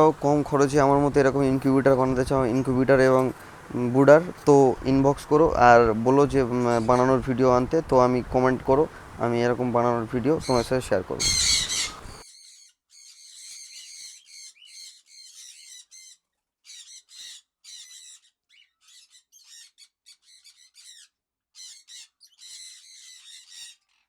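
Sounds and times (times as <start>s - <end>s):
small birds chirping and squawking: 0.0s - 24.0s.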